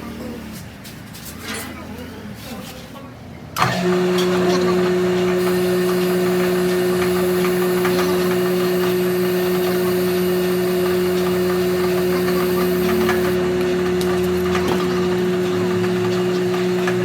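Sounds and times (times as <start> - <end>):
machine humming: 3.6 - 17.0.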